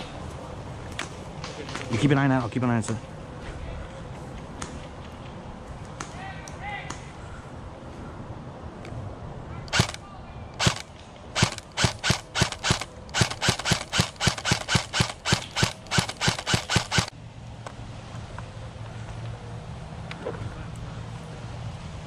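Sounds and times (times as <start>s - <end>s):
airsoft gun shots: 9.7s - 10.0s, 10.6s - 17.1s.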